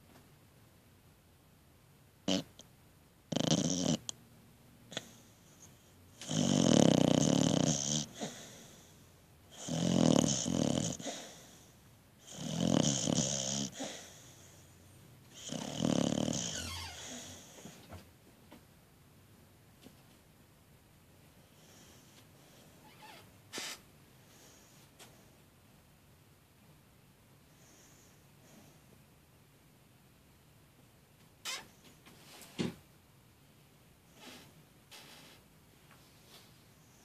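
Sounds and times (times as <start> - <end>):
pet snoring: 2.2 - 2.6, 3.3 - 4.2, 4.9 - 14.7, 15.3 - 17.8.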